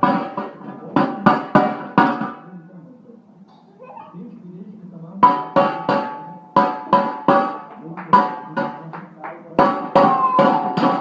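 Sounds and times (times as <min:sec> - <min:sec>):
baby banging on hard object: 0:00.0 - 0:02.5, 0:05.2 - 0:11.0.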